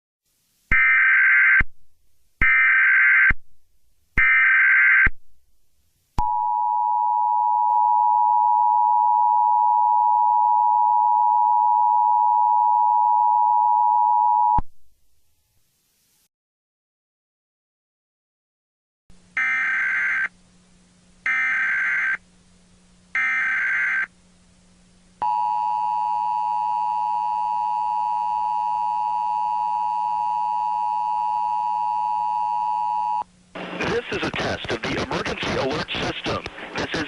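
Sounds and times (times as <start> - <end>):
dual-tone alert buzz: 19.4 - 20.3, 21.3 - 22.2, 23.2 - 24.1.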